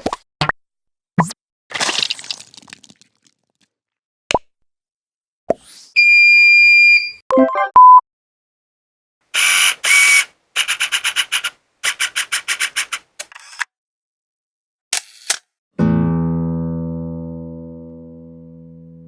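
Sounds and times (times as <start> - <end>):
steady high beep: 6.0 - 8.0
fast runs of clicks: 10.6 - 13.1.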